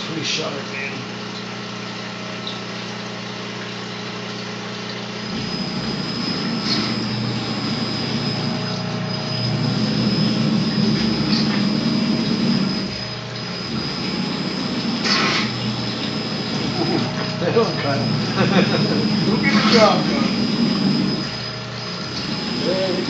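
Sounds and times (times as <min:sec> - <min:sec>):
grinder motor hum: 0:00.0 - 0:23.0
grinding wheel whine on knife: 0:05.2 - 0:23.0.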